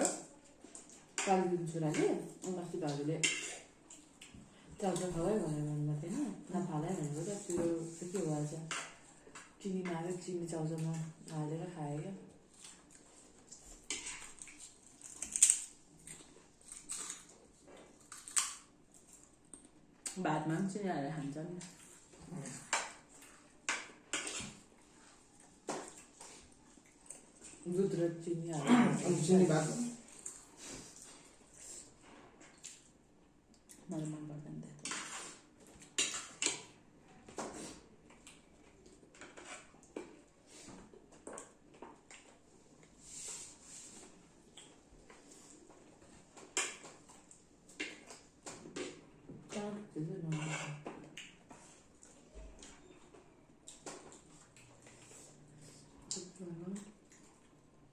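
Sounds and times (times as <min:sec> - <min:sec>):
chewing and mouth noises: 0:53.6 - 0:57.7.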